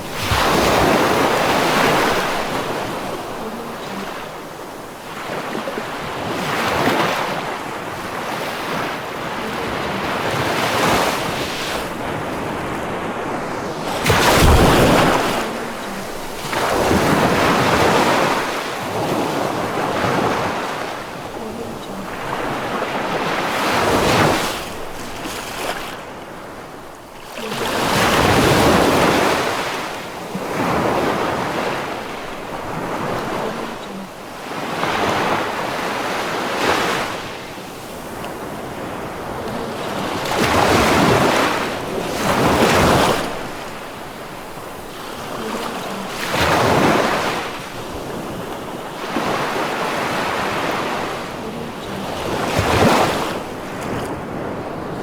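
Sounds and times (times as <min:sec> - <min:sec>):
rush of water: 0:00.0 - 0:55.0
sea waves breaking: 0:00.0 - 0:55.0.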